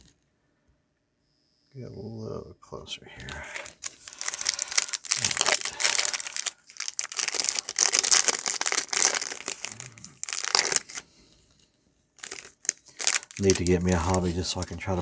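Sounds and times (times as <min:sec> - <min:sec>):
foil wrapper crinkling: 0:03.2 - 0:11.1, 0:12.2 - 0:15.0.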